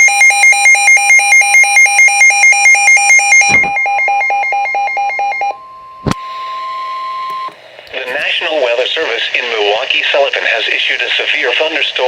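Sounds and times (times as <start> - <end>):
rapid electronic alarm beeping: 0.0 - 5.6
steady warning alarm tone: 0.0 - 7.6.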